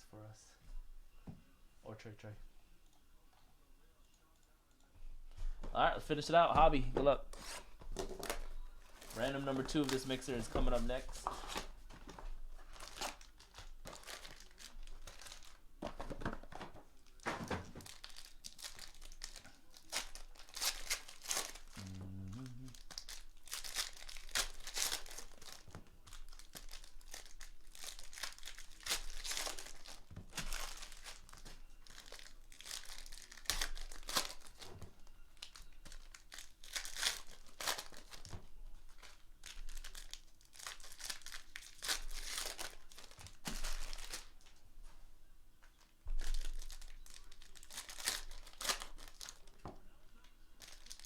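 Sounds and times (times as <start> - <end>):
foil wrappers tearing and crinkling: 7.4 - 21.8, 22.5 - 44.5, 46.2 - 49.7, 50.6 - 51.0.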